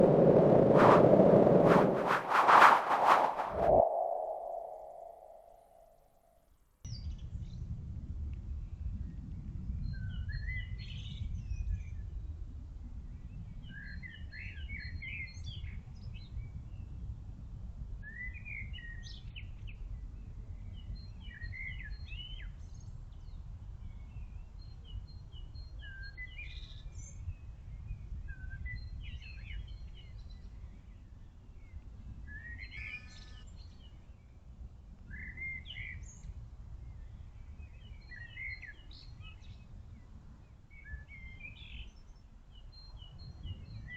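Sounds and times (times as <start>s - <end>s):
steady low rumble: 0.0s - 5.6s
songbird singing: 37.0s - 39.6s.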